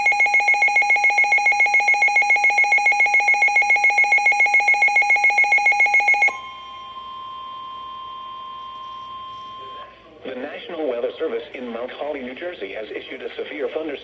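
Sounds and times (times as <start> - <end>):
rapid electronic alarm beeping: 0.0 - 7.1
faint steady alarm tone: 0.0 - 10.0.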